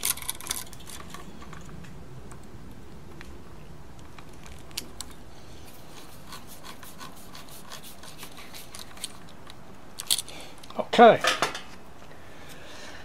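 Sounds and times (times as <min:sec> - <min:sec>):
wire clicking and rubbing: 0:04.0 - 0:10.3.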